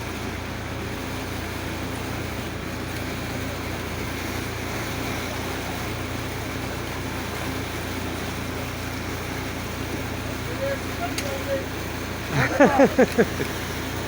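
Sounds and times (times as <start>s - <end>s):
boat motor droning: 0.0s - 14.0s
water rushing: 0.0s - 14.0s
wind: 0.0s - 14.0s.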